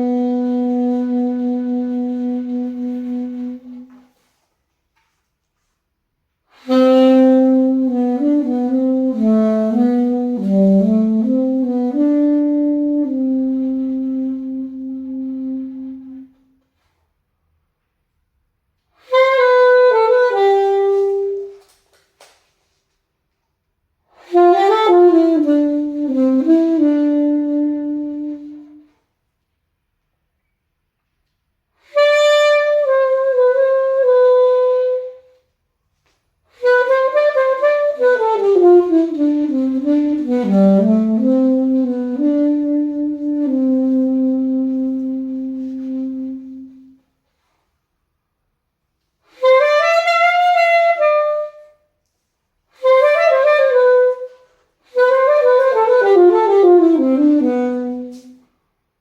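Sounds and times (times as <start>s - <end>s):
alto saxophone playing: 0.0s - 4.4s, 6.5s - 17.0s, 19.0s - 21.8s, 24.1s - 29.1s, 31.8s - 35.5s, 36.5s - 47.6s, 49.2s - 58.7s.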